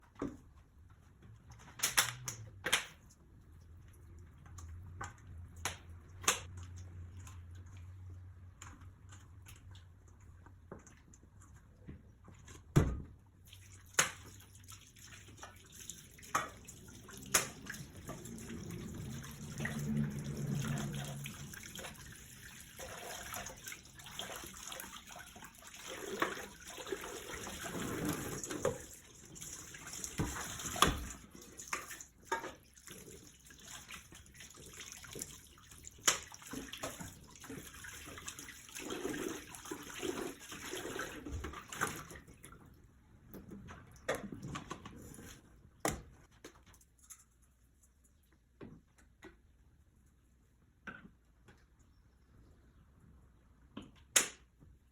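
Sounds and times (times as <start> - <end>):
water running in sink: 13.4 - 42.6.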